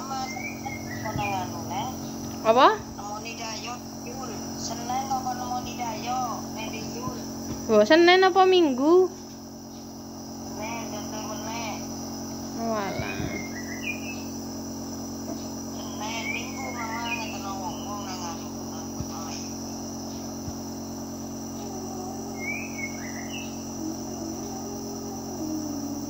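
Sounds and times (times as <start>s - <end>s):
nebulizer compressor humming: 0.0s - 26.0s.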